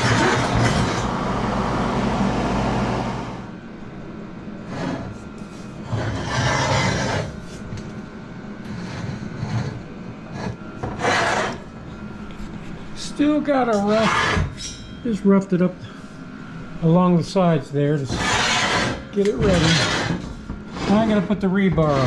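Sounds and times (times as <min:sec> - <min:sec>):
power grinder grinding steel: 0:18.1 - 0:22.0.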